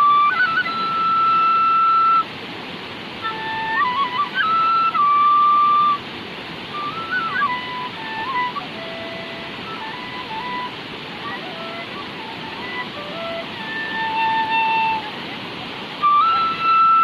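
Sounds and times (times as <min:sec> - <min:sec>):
bamboo flute melody: 0:00.0 - 0:17.0
steady hiss: 0:00.0 - 0:17.0.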